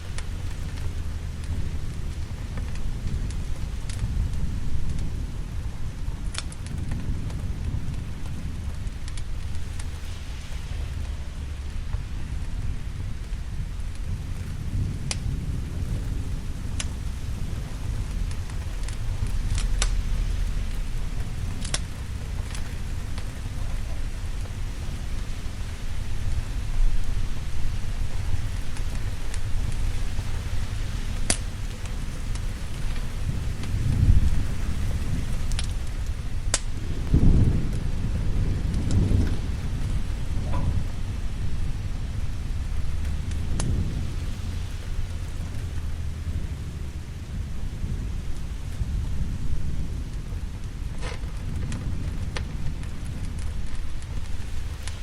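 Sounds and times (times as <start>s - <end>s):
low rumble: 0.0s - 55.0s
rolling thunder: 0.0s - 55.0s
steady rain: 0.0s - 55.0s
wood fire crackling pops: 0.0s - 55.0s.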